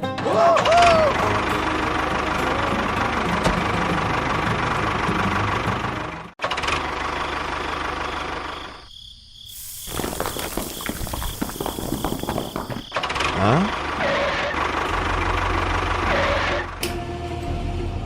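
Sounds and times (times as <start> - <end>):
engine running: 0.8 - 8.8, 13.0 - 18.0.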